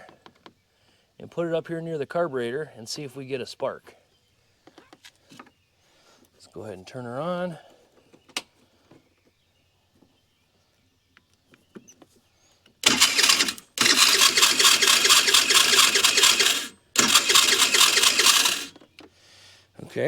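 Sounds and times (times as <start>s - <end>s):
electric starter cranking engine: 12.8s - 18.8s
harsh mechanical rattle: 12.8s - 18.8s.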